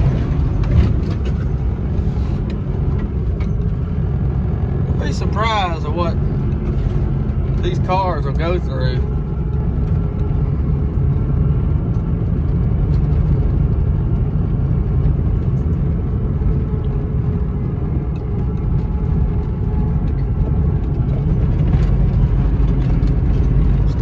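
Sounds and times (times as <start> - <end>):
car engine and road rumble: 0.0 - 24.0.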